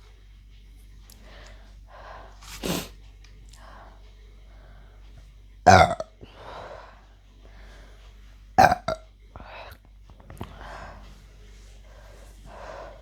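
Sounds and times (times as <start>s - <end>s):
woman burping: 5.7s - 6.1s, 8.6s - 9.0s.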